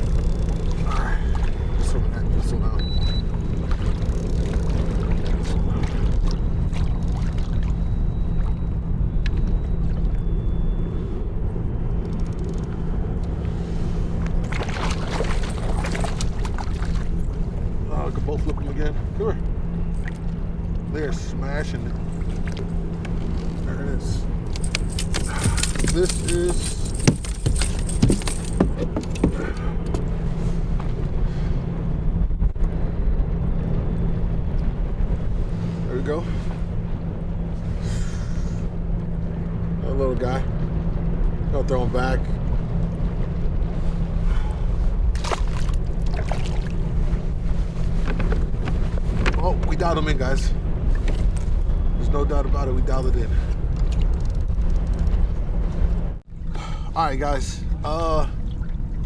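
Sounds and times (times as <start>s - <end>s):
constant low hum: 0.0s - 59.0s
low rumble: 0.0s - 59.0s.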